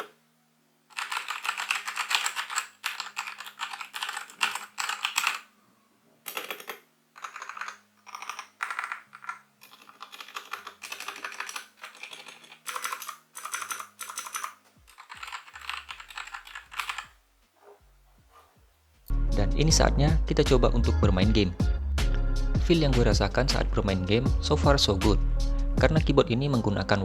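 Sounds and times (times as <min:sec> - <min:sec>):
mechanical keyboard typing: 0:00.9 - 0:05.5, 0:06.3 - 0:17.2.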